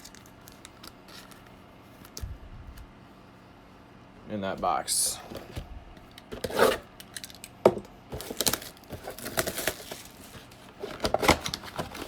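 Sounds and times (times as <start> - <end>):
foil wrappers crinkling: 0.0 - 1.5, 8.1 - 12.0.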